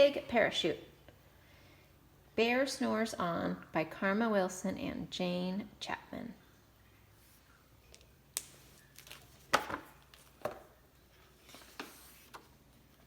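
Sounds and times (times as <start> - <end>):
handling knocks and rustles: 7.8 - 13.0.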